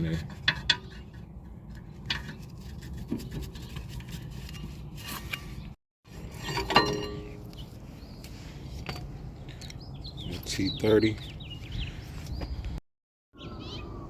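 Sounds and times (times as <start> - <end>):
hand tools scraping metal: 0.0 - 7.6.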